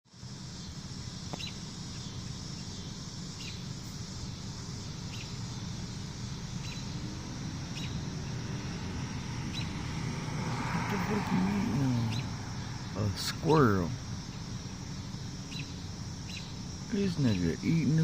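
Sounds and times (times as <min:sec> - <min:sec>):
outdoor background noise: 0:00.0 - 0:18.0
high bird chirp: 0:01.4 - 0:03.7, 0:05.0 - 0:05.6, 0:06.5 - 0:07.0, 0:07.7 - 0:08.1, 0:09.5 - 0:09.8, 0:11.8 - 0:13.2, 0:14.3 - 0:17.6.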